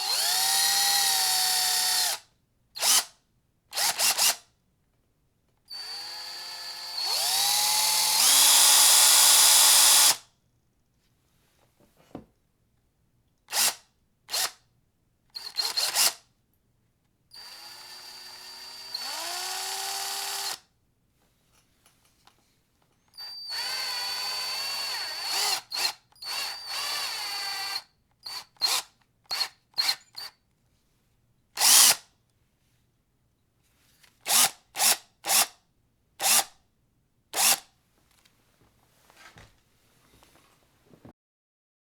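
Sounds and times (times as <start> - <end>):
power drill motor whine: 0.0 - 2.2, 5.7 - 10.2, 15.4 - 16.1, 17.4 - 20.6, 23.2 - 30.3.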